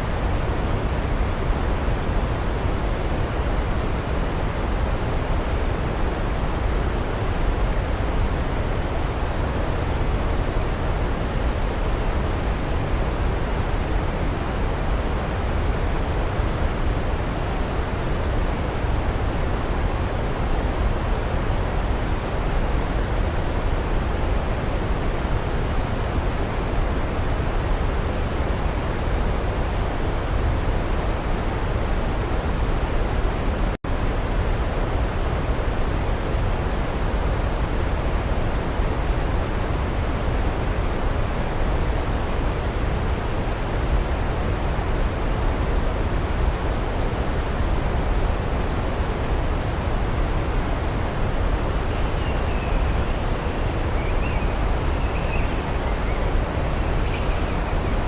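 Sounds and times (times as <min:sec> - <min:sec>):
waterfall rushing: 0:39.4 - 0:58.0
distant bird calls: 0:51.9 - 0:58.0.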